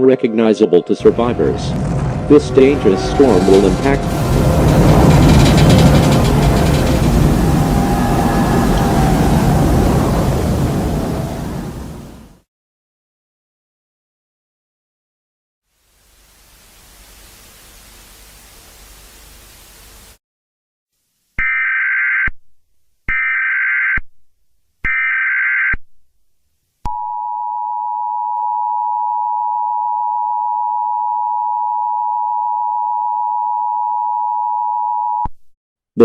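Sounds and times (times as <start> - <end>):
static hiss: 15.7 - 20.2.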